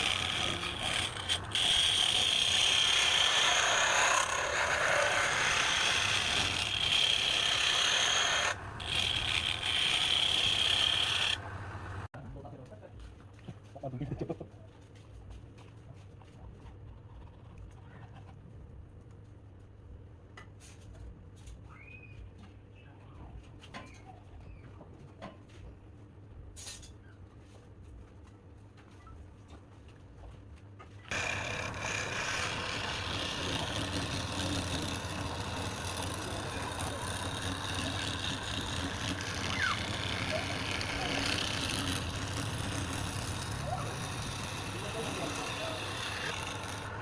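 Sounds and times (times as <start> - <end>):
woodworking machine rushing noise: 0.0 - 12.1, 31.1 - 47.0
faint bird chirps: 21.7 - 23.2.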